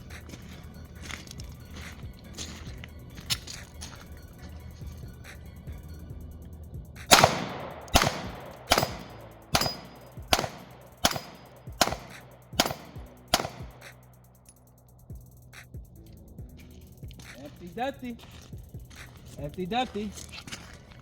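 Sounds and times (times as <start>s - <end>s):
pistol shots: 7.1s - 14.1s.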